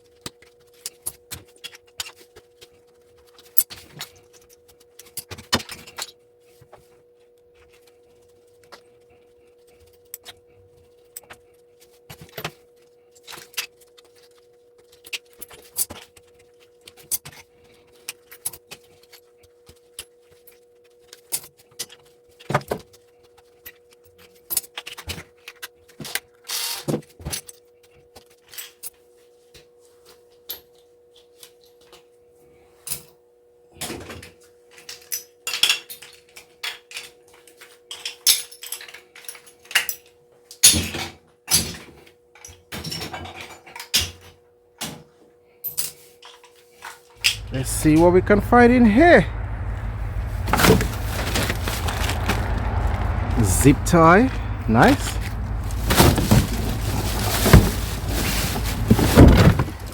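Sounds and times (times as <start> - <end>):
faint steady hum: 47.2 - 59.9.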